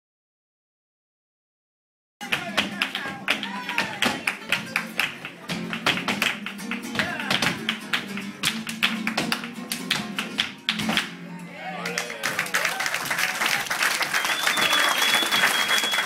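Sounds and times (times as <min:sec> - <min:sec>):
rapid sharp percussive taps: 0:02.2 - 0:11.1
flamenco guitar playing: 0:02.2 - 0:11.5.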